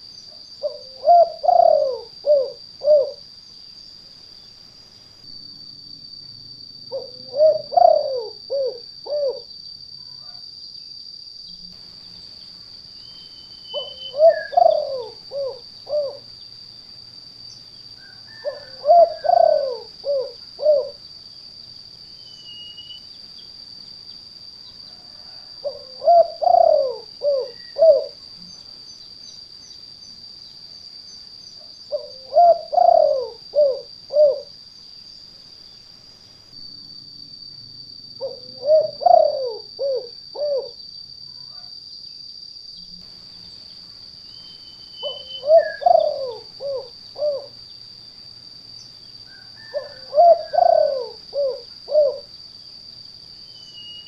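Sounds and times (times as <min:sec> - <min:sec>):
dove cooing: 0:00.6 - 0:03.2, 0:06.9 - 0:09.5, 0:13.7 - 0:16.3, 0:18.1 - 0:21.0, 0:25.0 - 0:28.2, 0:31.9 - 0:34.5, 0:38.2 - 0:40.8, 0:45.0 - 0:47.6, 0:49.4 - 0:52.3.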